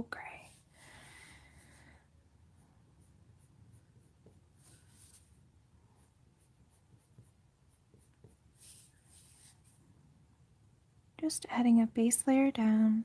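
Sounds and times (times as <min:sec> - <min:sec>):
pencil scratching on paper: 0:02.5 - 0:05.4, 0:06.0 - 0:09.8.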